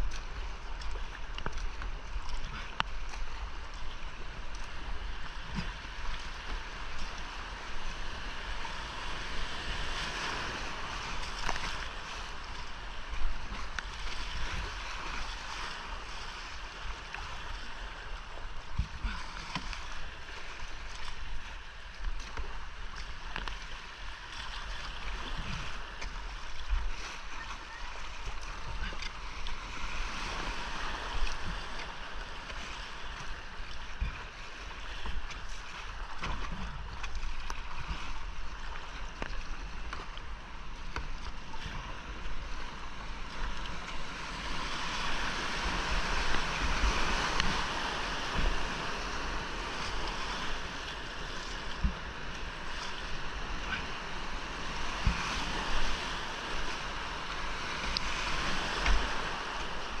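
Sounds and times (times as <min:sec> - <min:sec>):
kayak splashes and knocks: 0:00.0 - 1:00.0
rushing whitewater: 0:41.5 - 1:00.0.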